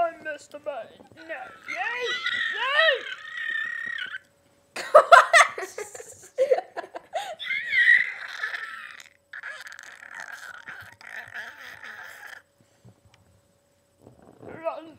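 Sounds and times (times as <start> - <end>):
bursts of laughter: 4.8 - 7.3.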